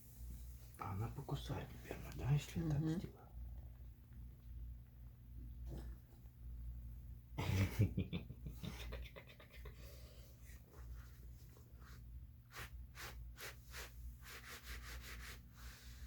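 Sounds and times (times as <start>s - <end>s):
rhythmic breathy strokes: 8.6s - 11.3s.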